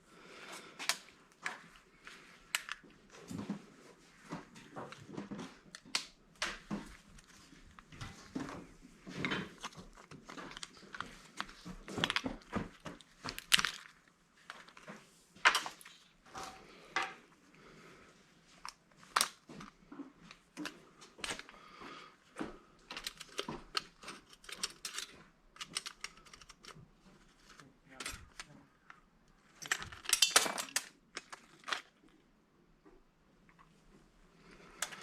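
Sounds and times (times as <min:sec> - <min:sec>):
metal parts and tools clicking: 0:22.9 - 0:26.8, 0:29.5 - 0:31.9.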